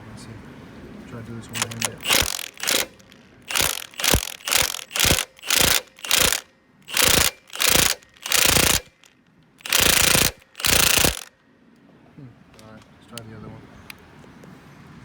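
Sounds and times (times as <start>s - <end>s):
impact wrench hammering bursts: 1.6s - 11.3s.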